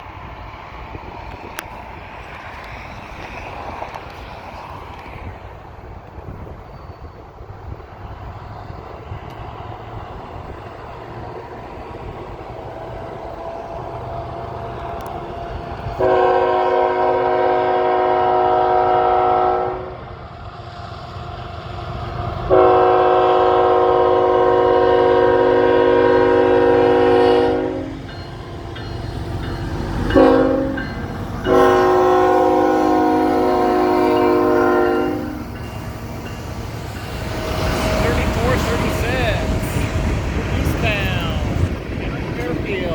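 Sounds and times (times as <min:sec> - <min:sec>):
diesel train rumble: 0:00.0 - 0:42.9
train air horn blasts: 0:15.9 - 0:20.0, 0:22.5 - 0:28.0, 0:30.1 - 0:35.6.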